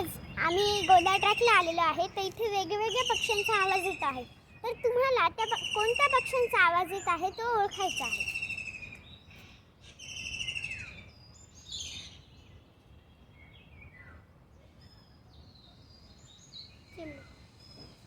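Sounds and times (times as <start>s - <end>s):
high bird chirps: 0.0s - 9.4s.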